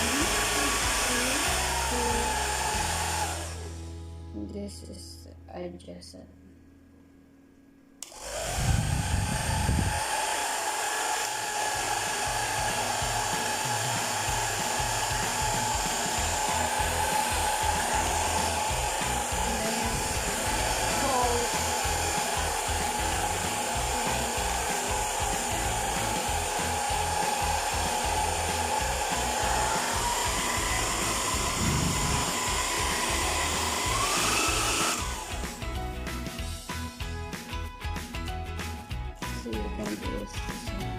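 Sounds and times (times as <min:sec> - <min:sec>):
hair dryer running: 0:00.0 - 0:03.9, 0:08.0 - 0:36.5
music playing: 0:00.0 - 0:05.0, 0:11.6 - 0:40.9.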